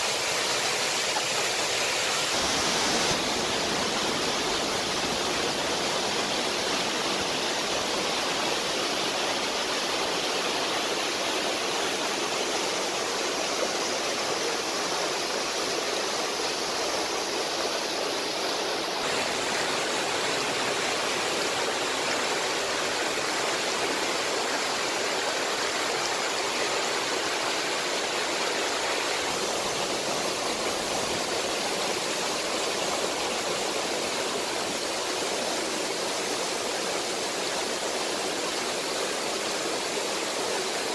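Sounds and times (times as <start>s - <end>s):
running water rushing: 0.0s - 40.9s.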